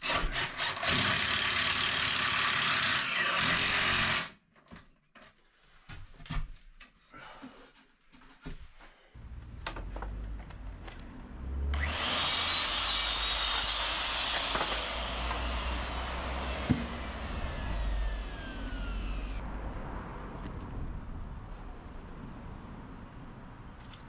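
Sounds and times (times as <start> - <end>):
saw cutting timber: 0.0 - 4.4, 11.4 - 19.4.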